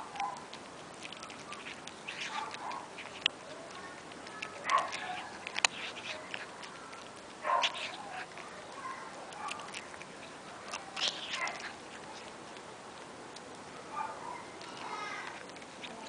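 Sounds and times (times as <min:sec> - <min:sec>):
cat eating dry kibble: 0:00.0 - 0:16.0.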